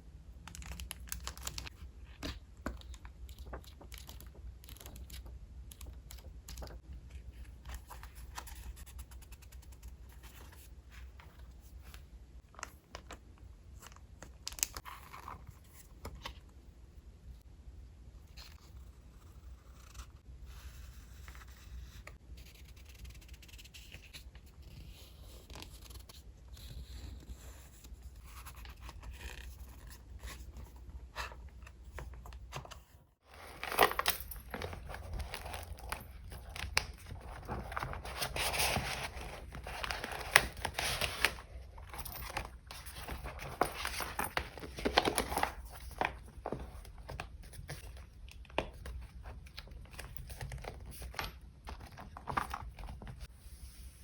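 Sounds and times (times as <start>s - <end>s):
paper rustling and crinkling: 28.0s - 54.0s.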